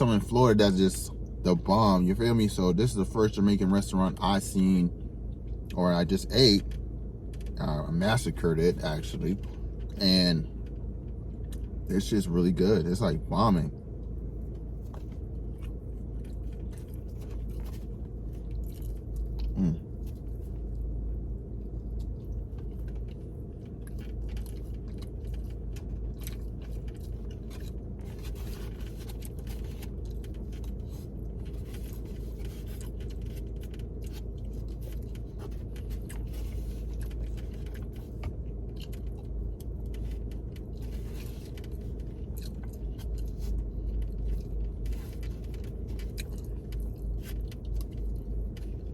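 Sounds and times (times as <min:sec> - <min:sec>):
steady low hum: 0:00.0 - 0:48.9
person chewing food: 0:13.9 - 0:48.9.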